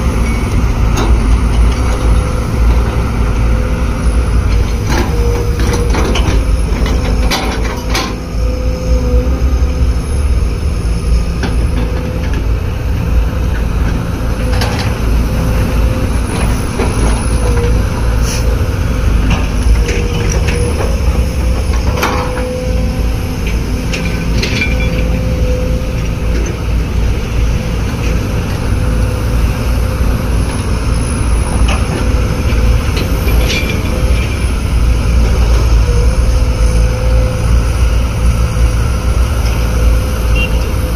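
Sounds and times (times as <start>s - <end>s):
machine rumbling: 0.0s - 40.9s
machine whine: 14.3s - 40.9s.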